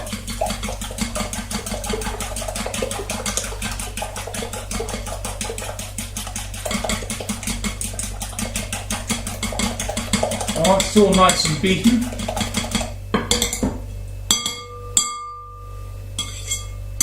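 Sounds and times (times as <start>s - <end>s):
fork beating eggs in bowl: 0.0s - 13.7s, 16.2s - 16.8s.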